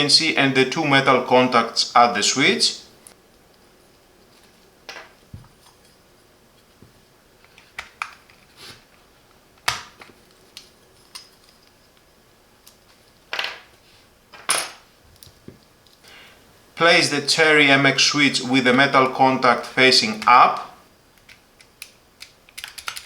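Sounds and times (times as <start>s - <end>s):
keyboard switches clicking and scraping: 21.2s - 23.0s.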